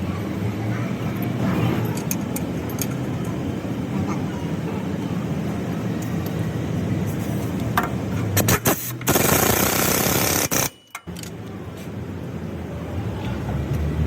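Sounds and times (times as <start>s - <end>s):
impact wrench rattling: 7.8s - 11.3s.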